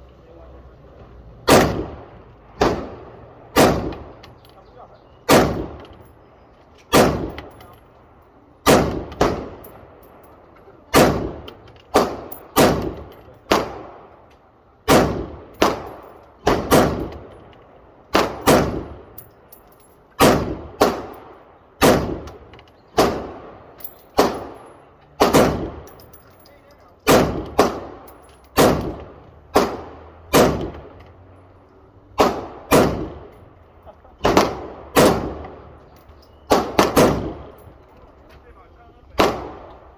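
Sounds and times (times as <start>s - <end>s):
rifle shots ringing: 1.5s - 4.2s, 5.3s - 5.9s, 6.9s - 7.7s, 8.6s - 10.3s, 10.9s - 14.1s, 14.8s - 17.4s, 18.1s - 22.4s, 23.0s - 26.2s, 27.0s - 30.9s, 34.2s - 35.6s, 36.5s - 37.7s.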